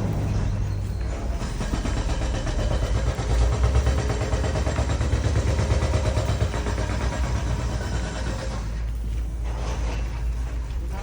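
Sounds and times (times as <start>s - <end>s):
engine running steadily: 0.0s - 11.0s.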